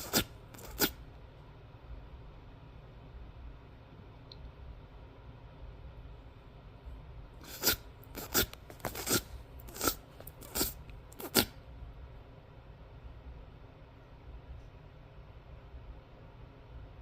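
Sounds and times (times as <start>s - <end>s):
mouth clicks: 7.4s - 11.5s.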